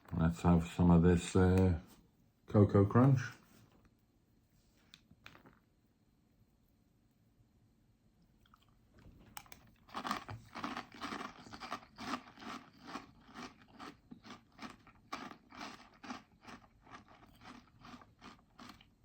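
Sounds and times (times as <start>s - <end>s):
crunchy cereal being chewed: 5.3s - 5.7s, 8.4s - 19.0s.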